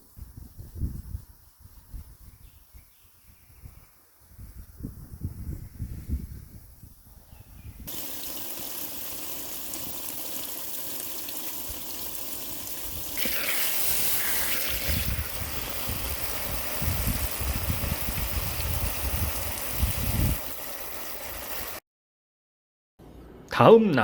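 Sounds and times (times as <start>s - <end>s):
water running: 7.9s - 21.8s.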